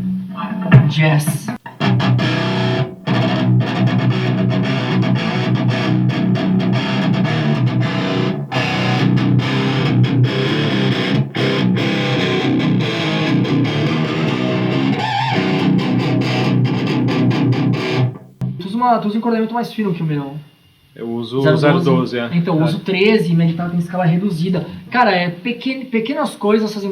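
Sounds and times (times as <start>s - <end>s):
distorted electric guitar riffing: 0.0s - 18.6s.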